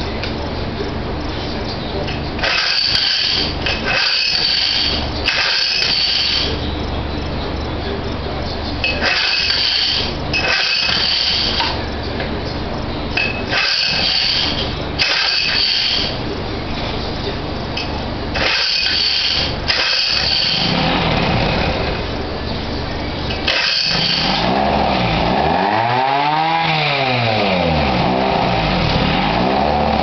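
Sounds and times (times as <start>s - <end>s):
boat motor idling and revving: 18.3s - 30.0s.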